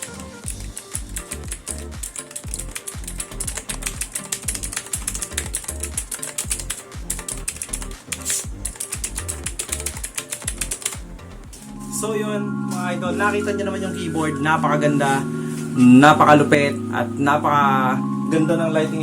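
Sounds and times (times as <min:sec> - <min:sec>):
mechanical keyboard typing: 0:00.0 - 0:11.1
background music with bass line: 0:00.0 - 0:19.0.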